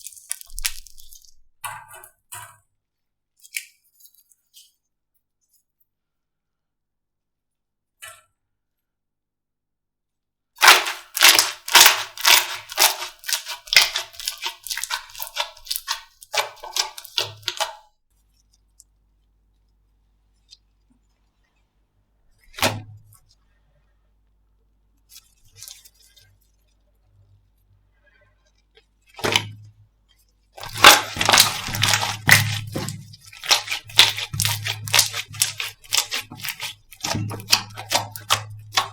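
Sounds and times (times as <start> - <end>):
slime popping and crackling: 0.0 - 1.3, 10.6 - 17.8, 30.6 - 38.9.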